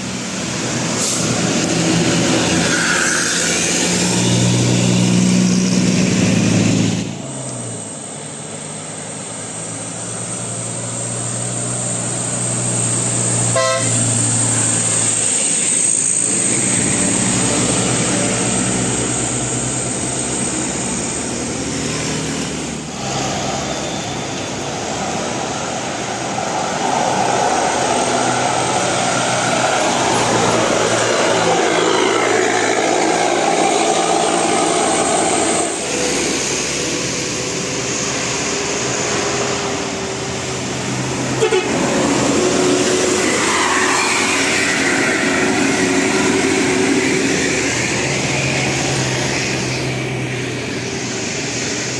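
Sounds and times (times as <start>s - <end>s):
bus engine: 0.0s - 51.9s
road noise: 0.0s - 51.9s
bus horns tooting: 13.4s - 14.7s, 41.2s - 42.2s.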